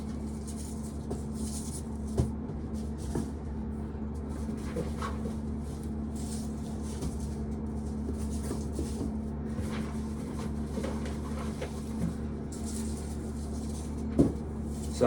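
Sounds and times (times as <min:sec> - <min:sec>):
corn sheller humming: 0:00.0 - 0:15.0
corn ears rattling: 0:14.6 - 0:15.0.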